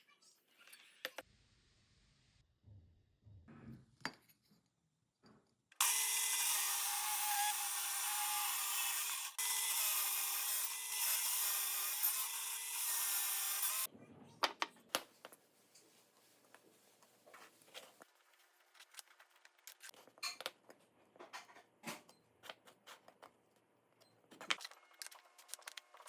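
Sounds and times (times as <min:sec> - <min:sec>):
power tool cutting: 0:05.8 - 0:13.9.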